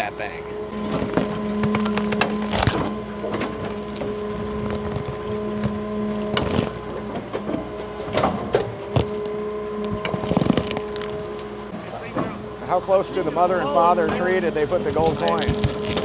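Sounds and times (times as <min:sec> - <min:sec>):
excavator engine drone: 0:00.0 - 0:16.0.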